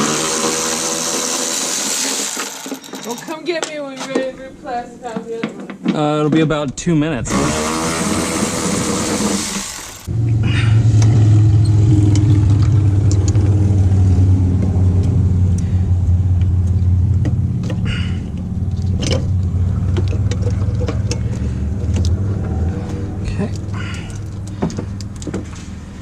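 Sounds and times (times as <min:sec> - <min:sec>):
engine idling: 0:08.2 - 0:26.0
sharp clicks and taps: 0:12.1 - 0:13.5.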